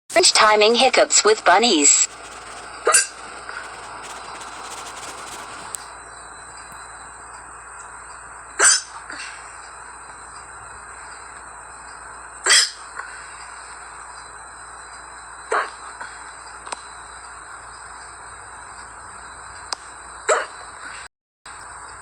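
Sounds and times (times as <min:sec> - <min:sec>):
steady background noise: 0:00.1 - 0:05.9.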